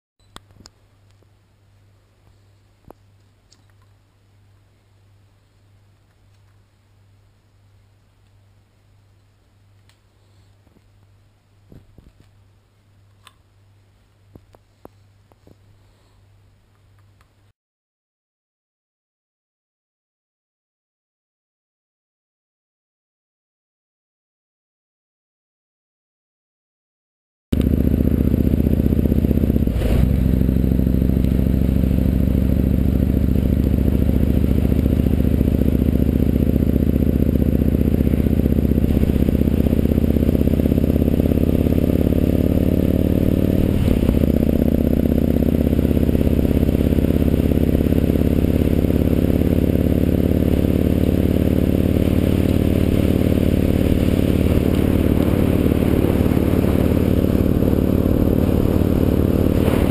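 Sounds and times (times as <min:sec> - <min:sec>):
motorcycle engine accelerating: 0:27.6 - 0:59.9.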